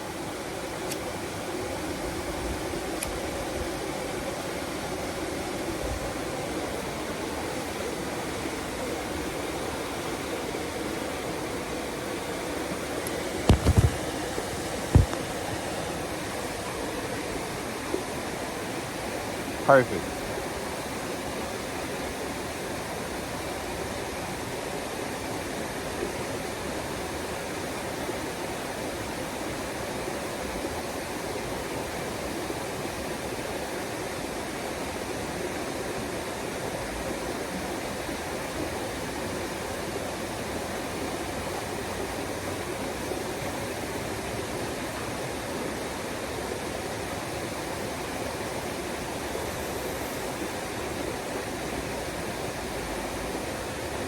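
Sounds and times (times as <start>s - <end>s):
waterfall roaring: 0.1s - 29.4s.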